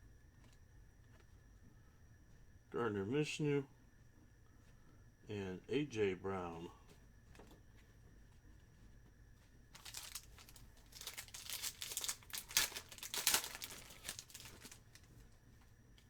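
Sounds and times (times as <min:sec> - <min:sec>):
foil wrapper crinkling and tearing: 0:09.7 - 0:15.2.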